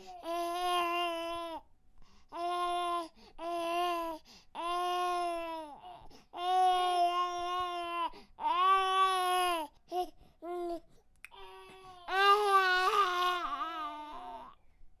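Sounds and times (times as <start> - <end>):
baby crying: 2.4 - 10.7, 11.3 - 14.6.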